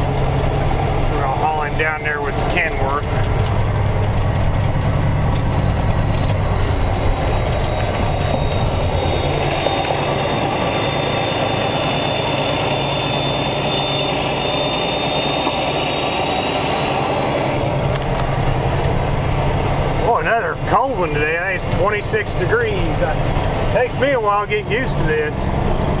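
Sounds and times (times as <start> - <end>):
diesel truck engine running: 0.0 - 26.0
high whine: 0.0 - 26.0.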